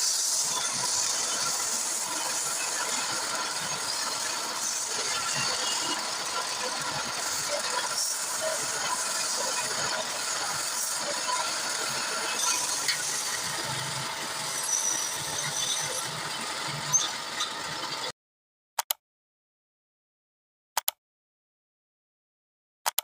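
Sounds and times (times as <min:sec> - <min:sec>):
wood lathe scraping: 0:00.0 - 0:18.1
short clicks: 0:18.8 - 0:19.0, 0:20.8 - 0:21.0.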